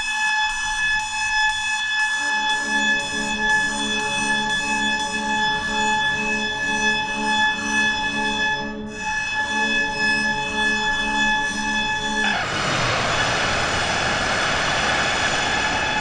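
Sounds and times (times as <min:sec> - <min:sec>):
reverberant alarm clock beeping: 0:00.1 - 0:16.0
low pulsing throb: 0:12.2 - 0:16.0.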